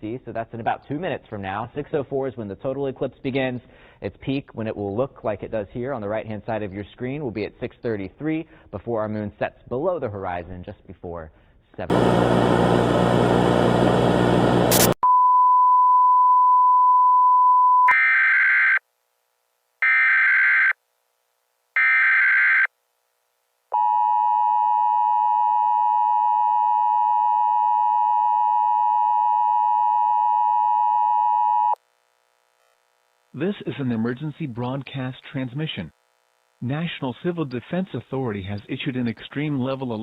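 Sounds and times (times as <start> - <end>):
burst of static: 11.9 - 15.0
short data bursts: 14.7 - 15.0.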